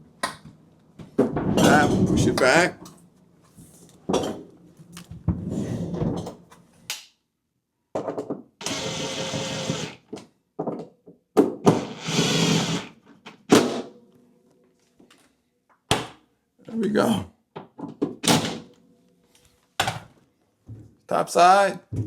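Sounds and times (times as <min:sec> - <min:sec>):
power drill running: 0:08.6 - 0:10.0, 0:11.7 - 0:12.9.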